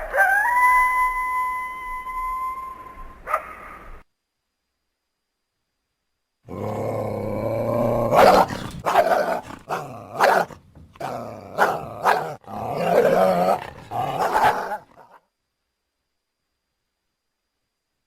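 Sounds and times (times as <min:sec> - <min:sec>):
coyote barking: 0:06.5 - 0:15.2
coyote growling: 0:06.5 - 0:15.2.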